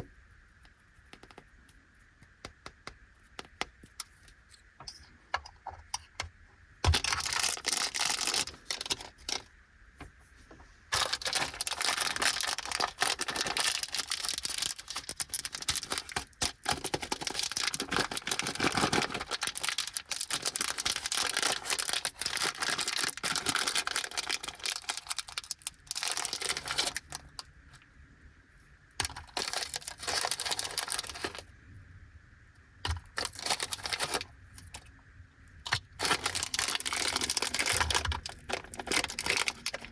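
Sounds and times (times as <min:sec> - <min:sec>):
plastic snack packaging crackling: 0:06.8 - 0:09.5, 0:10.9 - 0:27.5, 0:29.0 - 0:31.5, 0:32.8 - 0:34.9, 0:35.7 - 0:39.9.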